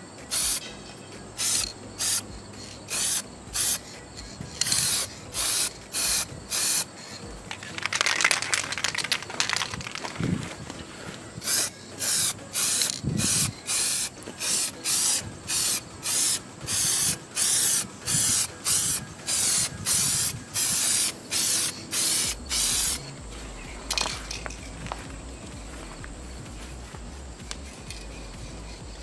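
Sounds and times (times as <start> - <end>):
aerosol spray bursts: 0.2 - 0.7, 1.4 - 7.0, 11.4 - 23.1.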